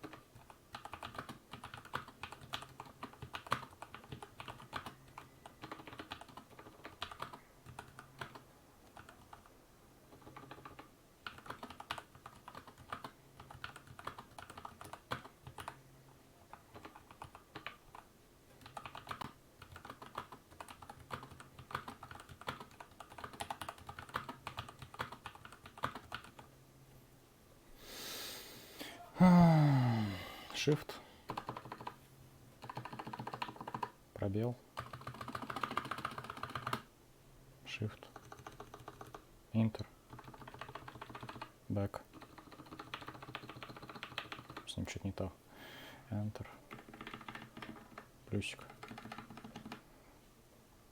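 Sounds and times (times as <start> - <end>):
mechanical keyboard typing: 0.0 - 9.5, 10.1 - 15.8, 16.5 - 26.5, 31.3 - 32.0, 32.6 - 34.0, 34.8 - 36.9, 38.1 - 39.2, 40.1 - 41.5, 42.1 - 44.7, 46.7 - 49.8.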